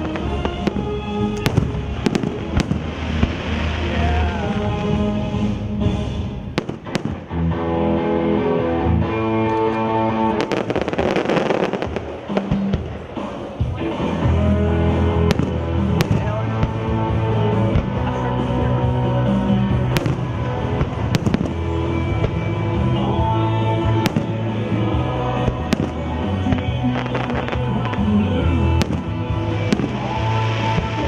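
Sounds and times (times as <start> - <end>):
fireworks bangs: 0.0 - 7.4, 10.4 - 31.0
music on outdoor loudspeakers: 0.0 - 31.0.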